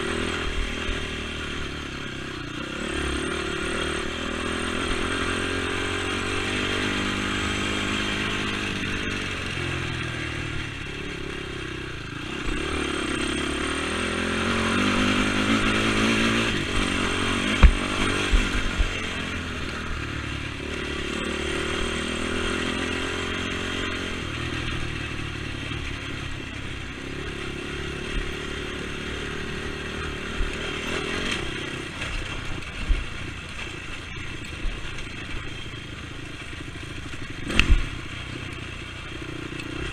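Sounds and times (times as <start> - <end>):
quad engine revving: 0.0 - 39.9
sharp clattering knocks: 16.7 - 19.0.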